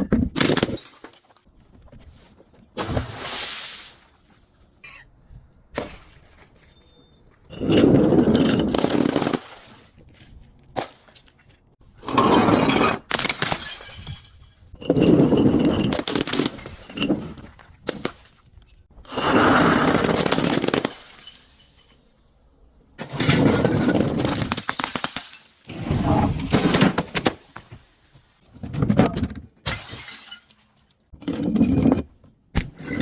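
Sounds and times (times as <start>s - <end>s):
glass bottles crushing and breaking: 0.3s - 1.4s, 12.2s - 18.4s, 19.1s - 22.1s, 23.0s - 25.8s, 29.6s - 33.0s.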